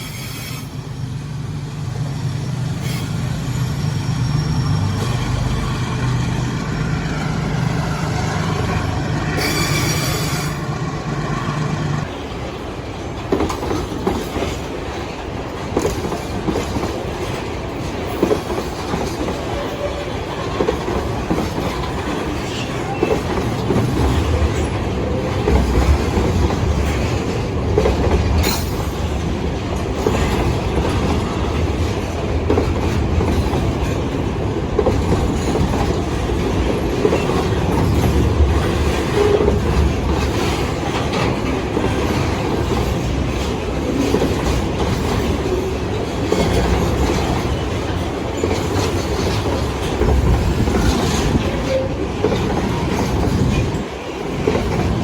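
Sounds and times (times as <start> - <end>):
locomotive engines humming: 0.0 - 55.0
train wheels clattering on rails: 11.7 - 55.0.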